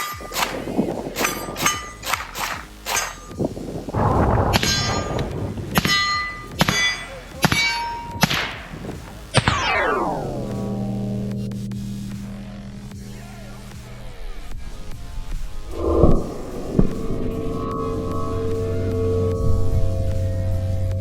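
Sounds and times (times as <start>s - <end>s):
bullets clanging on steel targets: 0.0s - 3.4s, 4.5s - 9.8s.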